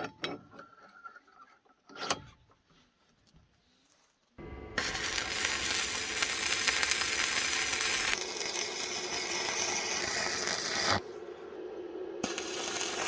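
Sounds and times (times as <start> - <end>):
power tool grinding axe: 4.4 - 11.1.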